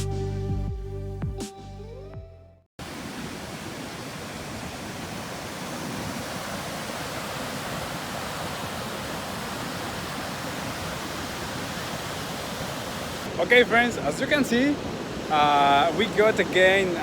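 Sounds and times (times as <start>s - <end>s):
ocean surf rushing: 2.8s - 17.0s
wind on microphone: 3.6s - 13.3s.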